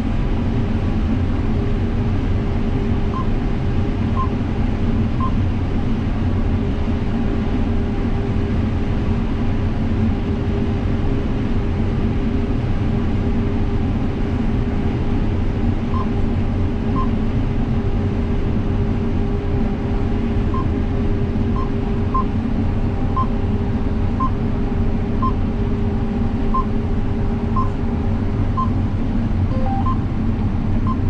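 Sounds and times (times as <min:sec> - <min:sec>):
combine harvester drone: 0:00.0 - 0:31.0
short electronic beep: 0:29.5 - 0:30.0.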